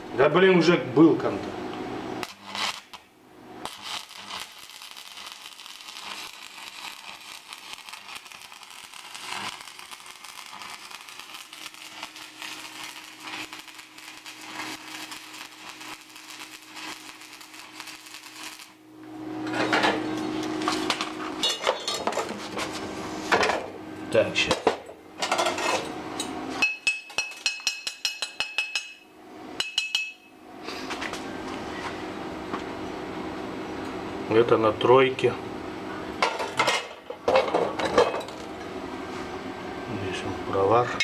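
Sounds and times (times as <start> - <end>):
welding arc crackling: 1.8 - 21.4.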